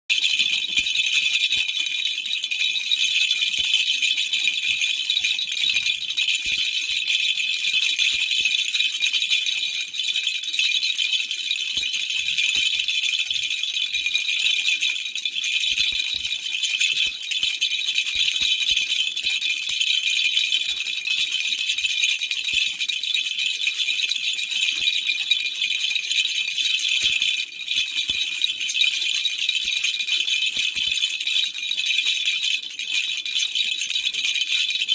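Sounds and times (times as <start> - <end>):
baby rattle jingling: 0.1 - 7.3.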